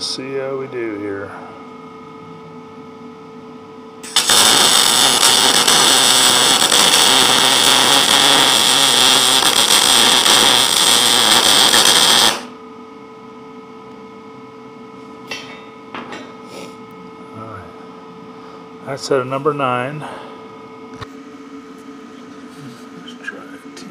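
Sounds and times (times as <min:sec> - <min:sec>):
welding arc crackling: 0:04.0 - 0:12.6.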